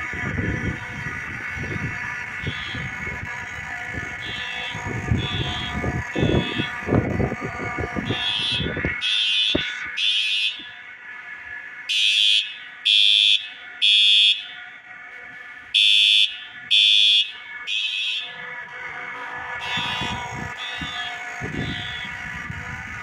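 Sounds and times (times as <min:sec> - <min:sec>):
low rumbling noise: 0:00.0 - 0:10.0, 0:17.5 - 0:23.0
fire alarm horn blasts: 0:00.0 - 0:23.0.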